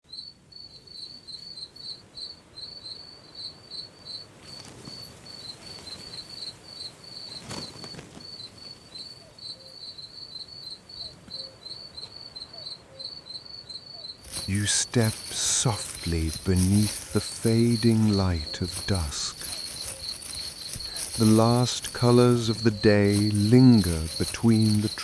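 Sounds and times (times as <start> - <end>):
crickets chirping: 13.1 - 25.0.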